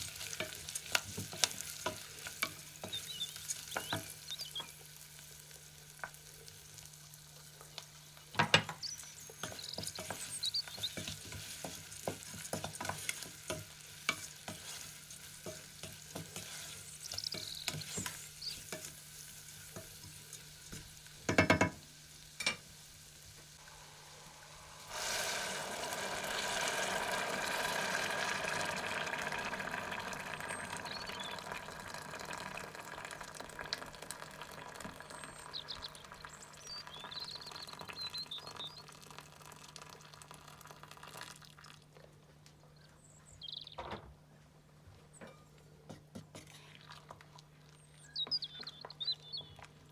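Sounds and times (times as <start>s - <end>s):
spoon stirring in a pot: 0.0s - 4.8s, 8.4s - 21.8s
frying sizzle: 0.0s - 41.9s.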